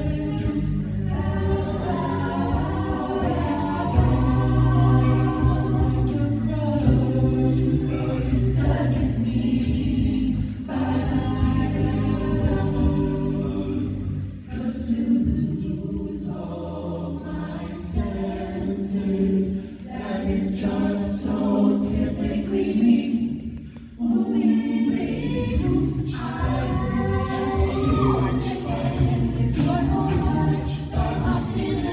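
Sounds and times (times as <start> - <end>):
sung bass line: 0.0 - 14.3, 25.0 - 31.9
a cappella group singing: 0.0 - 31.9.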